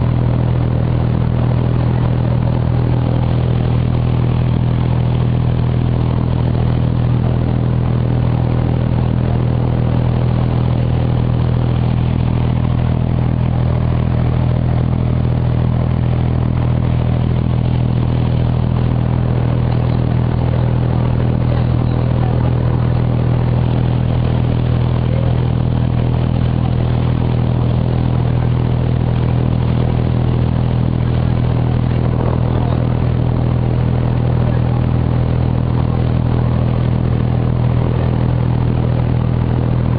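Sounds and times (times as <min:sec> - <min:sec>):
boat diesel engine humming: 0:00.0 - 0:39.9.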